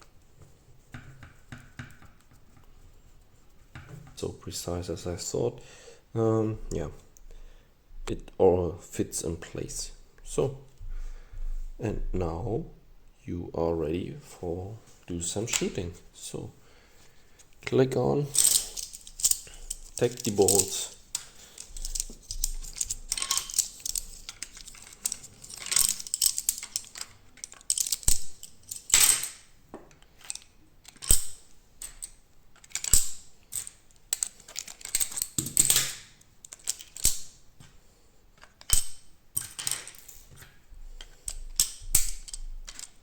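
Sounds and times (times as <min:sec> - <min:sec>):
plastic clicks and rattles: 0:18.4 - 0:37.3, 0:38.4 - 0:43.0.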